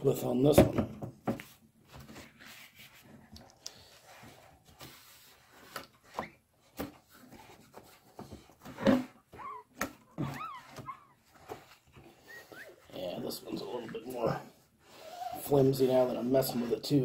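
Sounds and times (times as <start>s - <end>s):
dog whimpering: 9.4s - 11.2s.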